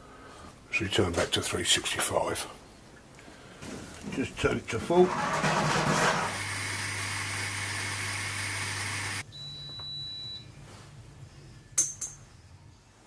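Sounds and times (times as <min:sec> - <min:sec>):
low hum with hiss: 0:09.3 - 0:13.0.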